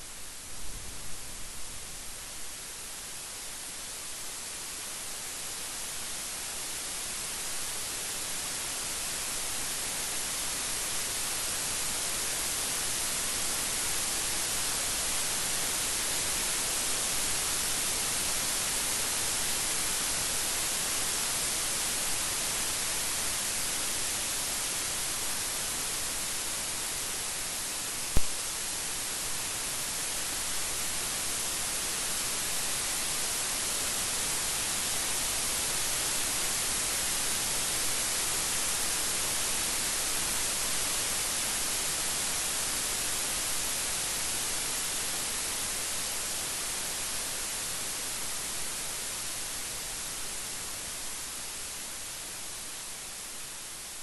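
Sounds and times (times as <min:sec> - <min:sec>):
dense rain hissing: 0:00.0 - 0:54.0
sharp click: 0:28.2 - 0:28.4.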